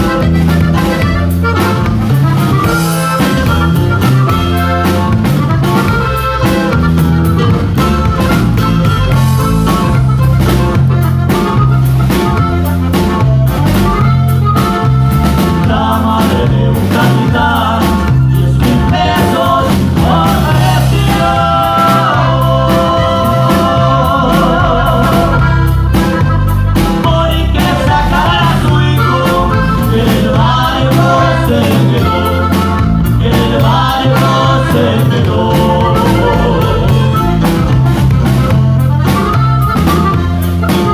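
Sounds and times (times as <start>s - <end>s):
loud music with singing: 9.1s - 39.4s.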